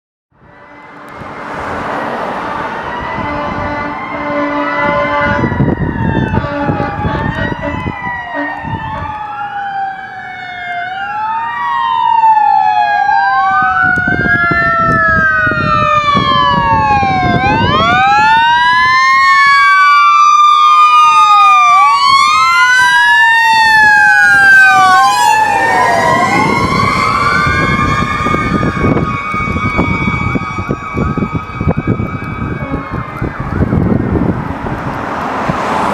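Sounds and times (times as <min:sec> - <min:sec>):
air horn: 0:00.4 - 0:01.6, 0:03.2 - 0:05.7, 0:06.3 - 0:09.1, 0:32.5 - 0:33.3
electronic sirens wailing: 0:00.4 - 0:35.9.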